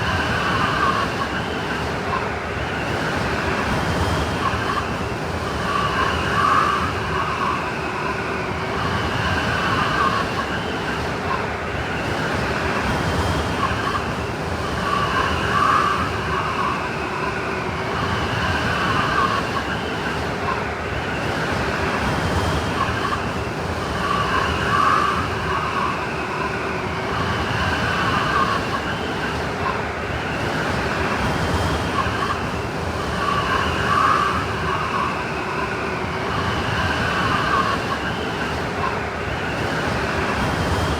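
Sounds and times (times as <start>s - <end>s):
howling blizzard wind: 0.0s - 40.9s.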